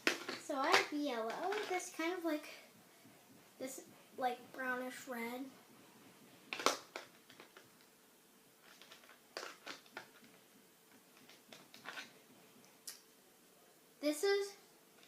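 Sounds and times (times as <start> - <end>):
paint tubes clicking and rustling: 0.0 - 2.0, 6.5 - 8.0, 8.6 - 12.2.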